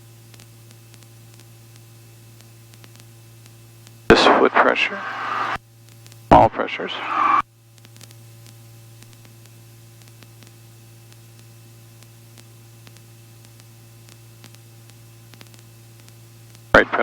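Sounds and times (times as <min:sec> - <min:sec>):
intercom hum and hiss: 0:04.1 - 0:05.6, 0:06.3 - 0:07.4, 0:16.8 - 0:17.0.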